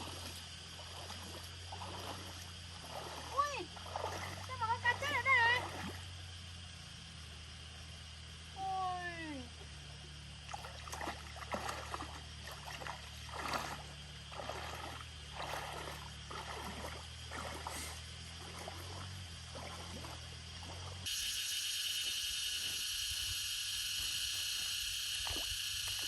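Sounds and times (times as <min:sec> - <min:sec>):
water splashing and sloshing: 0:00.0 - 0:06.6, 0:10.0 - 0:21.2, 0:25.1 - 0:26.0
steady low hum: 0:00.0 - 0:26.0.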